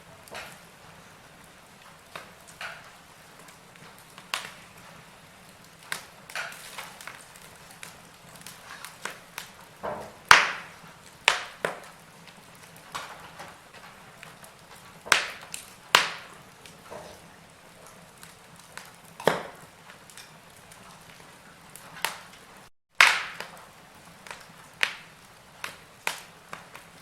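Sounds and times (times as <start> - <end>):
faint steady hiss: 0.0 - 27.0
wood fire crackling and popping: 0.0 - 27.0.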